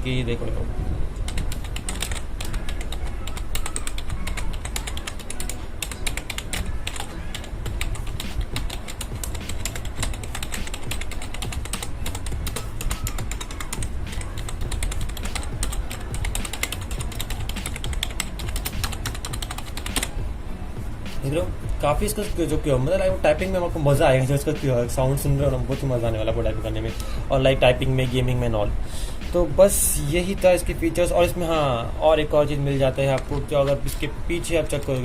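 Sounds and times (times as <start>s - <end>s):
fast keyboard typing: 1.3s - 20.2s.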